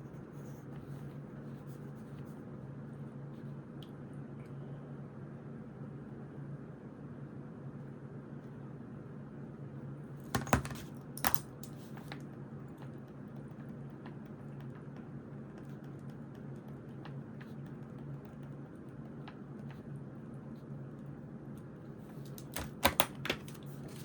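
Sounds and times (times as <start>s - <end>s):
steady low hum: 0.0s - 24.0s
pen knocking on desk: 10.3s - 11.4s
faint writing ticks: 12.2s - 21.7s.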